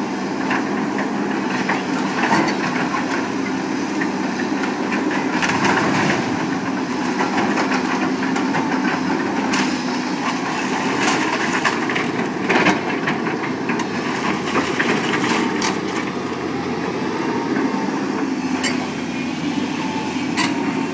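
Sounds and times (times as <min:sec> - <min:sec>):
heavy machine engine running: 0:00.0 - 0:20.9.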